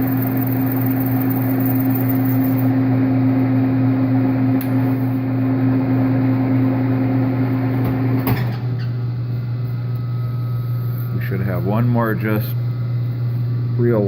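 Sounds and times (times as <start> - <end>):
metal lathe humming: 0.0 - 8.8.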